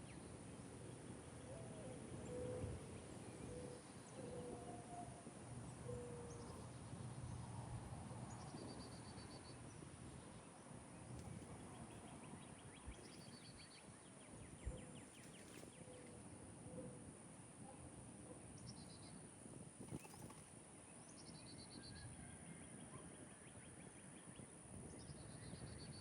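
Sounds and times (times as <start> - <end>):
songbird singing trills: 8.2 - 16.2, 19.8 - 20.4, 21.0 - 26.0.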